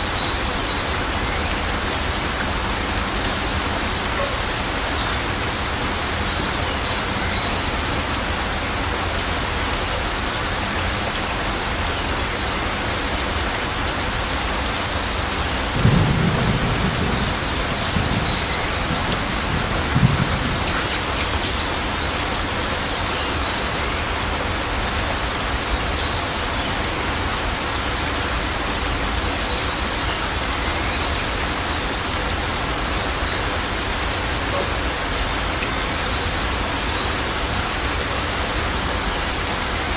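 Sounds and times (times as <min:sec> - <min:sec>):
steady rain falling: 0:00.0 - 0:39.9
thunder rolling and cracking: 0:15.4 - 0:22.0.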